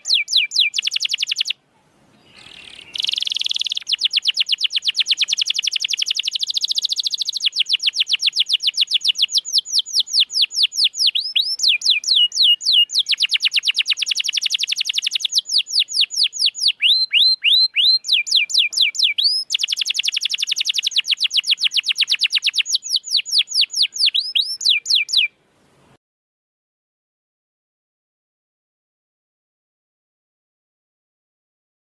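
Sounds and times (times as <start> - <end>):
canary singing trills: 0.0 - 25.4.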